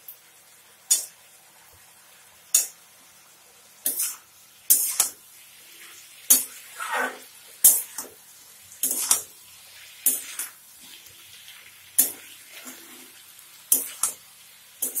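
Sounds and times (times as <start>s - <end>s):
oil sizzling: 0.0s - 15.0s
spatula scraping a pan: 3.8s - 8.2s, 8.8s - 11.0s, 12.0s - 14.2s, 14.8s - 15.0s.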